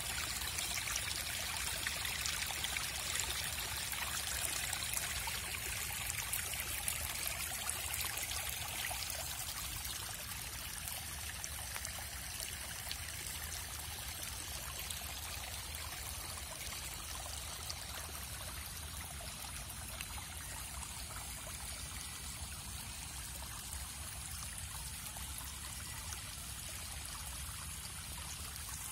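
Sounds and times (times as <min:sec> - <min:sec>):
flowing trickling water: 0:00.0 - 0:28.9.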